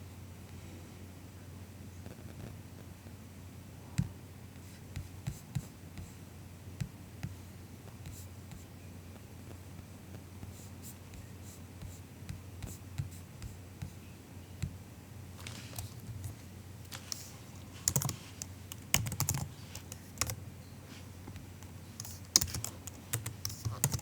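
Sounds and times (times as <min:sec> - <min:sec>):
low steady hum: 0:00.0 - 0:24.0
soft keyboard keystrokes: 0:15.4 - 0:20.4, 0:21.3 - 0:24.0.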